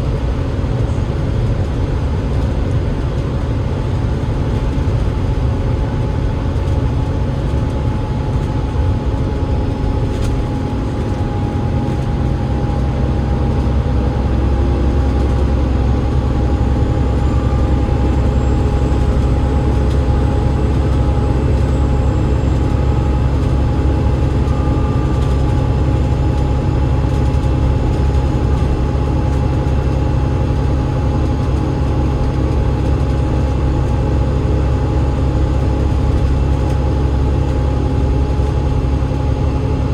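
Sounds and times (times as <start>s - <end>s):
bus diesel engine rumble: 0.0s - 39.9s
thin steady whine: 9.8s - 26.3s.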